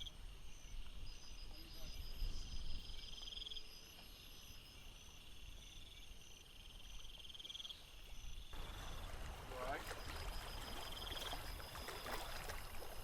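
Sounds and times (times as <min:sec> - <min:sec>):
insects trilling: 0:00.0 - 0:13.0
short insect chirps: 0:00.0 - 0:13.0.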